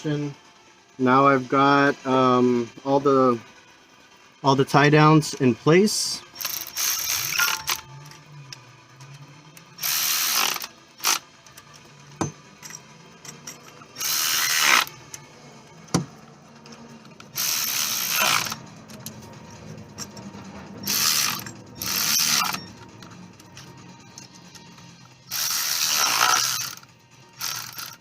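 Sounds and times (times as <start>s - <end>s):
ratchet wrench clicking: 6.4s - 7.8s, 9.8s - 11.7s, 12.6s - 14.9s, 17.3s - 18.6s, 20.8s - 22.6s, 25.3s - 28.0s.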